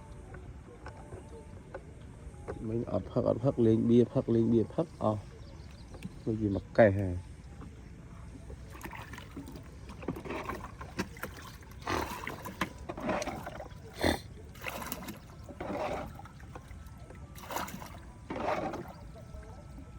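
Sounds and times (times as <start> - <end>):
water splashing and sloshing: 4.8 - 19.9.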